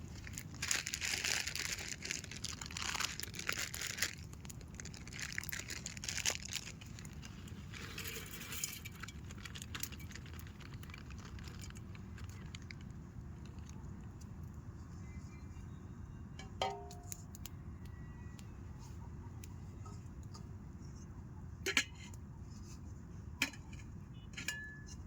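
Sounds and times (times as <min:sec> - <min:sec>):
sack rustling and crinkling: 0:00.1 - 0:12.7.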